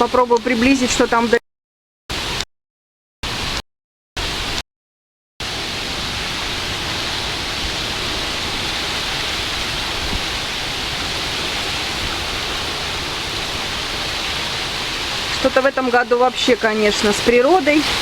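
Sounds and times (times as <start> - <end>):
heavy rain pouring: 5.4 - 18.0.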